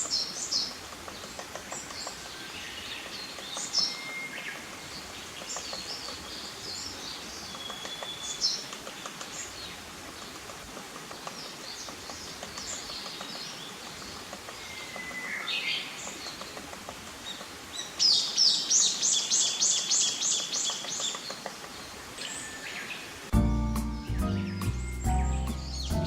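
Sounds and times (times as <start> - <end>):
faint light ticks: 0.0 - 18.2, 19.6 - 21.9
birds calling and chirping: 0.0 - 26.0.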